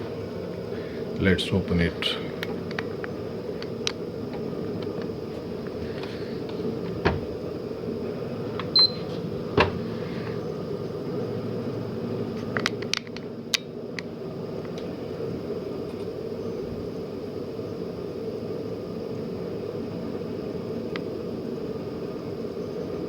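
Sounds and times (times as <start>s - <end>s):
console humming: 0.0s - 17.5s
short high beep: 8.8s - 9.0s.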